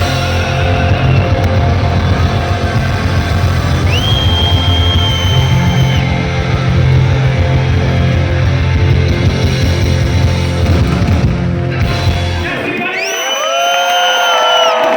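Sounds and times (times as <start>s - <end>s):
audience cheering and whistling: 0.0s - 8.9s, 12.6s - 14.9s
live rock band playing: 0.0s - 13.0s.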